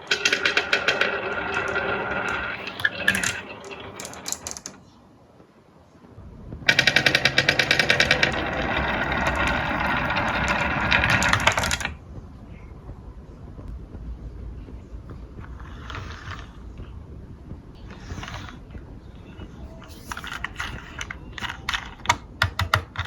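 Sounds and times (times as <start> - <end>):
marbles clattering down wooden run: 0.0 - 4.8, 6.7 - 12.0.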